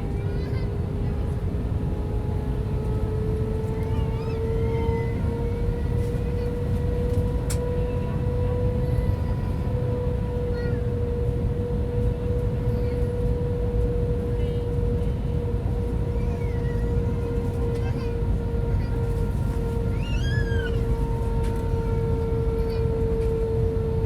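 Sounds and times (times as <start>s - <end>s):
airplane cabin rumble: 0.0s - 24.0s.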